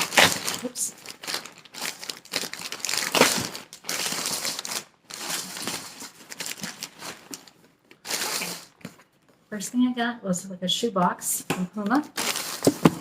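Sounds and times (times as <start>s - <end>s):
packaging crinkling and rustling: 0.0s - 9.3s, 12.0s - 13.0s.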